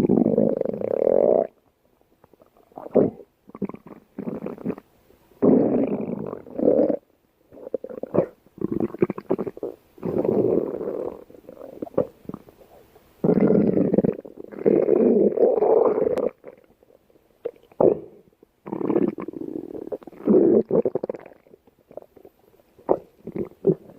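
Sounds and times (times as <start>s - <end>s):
faint crackly gurgling: 0.0s - 23.9s
stomach growling: 5.4s - 23.9s.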